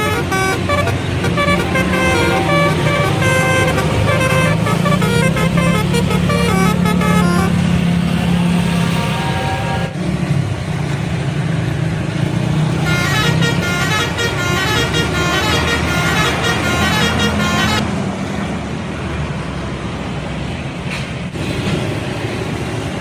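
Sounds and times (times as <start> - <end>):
bus horn playing musical notes: 0.0 - 7.8, 8.8 - 10.0, 12.8 - 17.8
bus engine rumble: 0.0 - 23.0.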